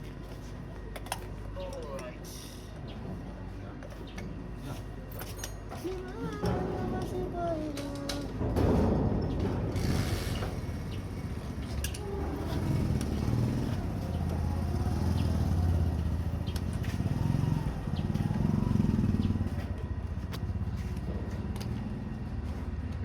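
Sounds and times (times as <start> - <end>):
vehicle engine rumbling: 5.7 - 23.0.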